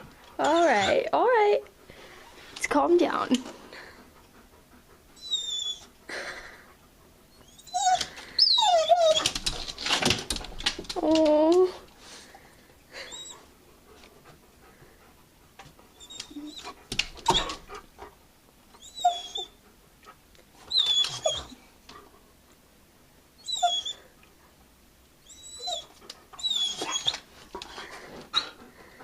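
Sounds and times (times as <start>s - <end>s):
dog whining: 0.4s - 1.1s, 5.2s - 6.0s, 7.3s - 9.6s, 13.0s - 13.5s, 15.9s - 17.8s, 18.8s - 19.6s, 20.6s - 21.7s, 23.4s - 24.1s, 25.2s - 28.6s.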